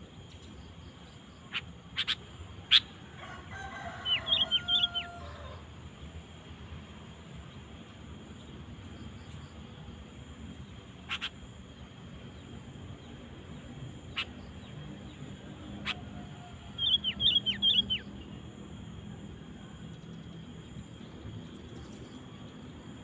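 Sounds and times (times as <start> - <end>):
bird calling sharp notes: 11.1 - 11.3.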